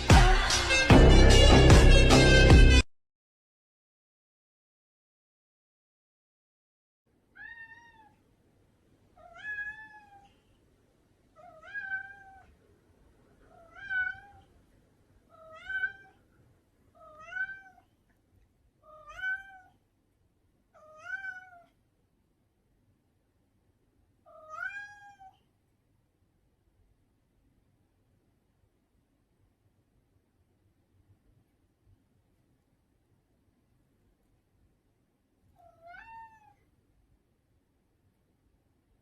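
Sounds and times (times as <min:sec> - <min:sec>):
cat meowing: 0:07.3 - 0:08.2, 0:09.2 - 0:10.5, 0:11.4 - 0:12.6, 0:13.5 - 0:14.5, 0:15.3 - 0:16.2, 0:16.9 - 0:17.9, 0:18.8 - 0:19.8, 0:20.7 - 0:21.8, 0:24.3 - 0:25.5, 0:35.6 - 0:36.7.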